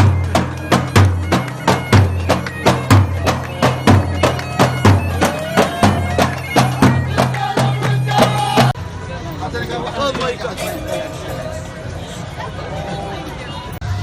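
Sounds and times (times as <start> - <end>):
steady drumbeat: 0.0 - 8.8
reedy wind melody: 0.0 - 14.0.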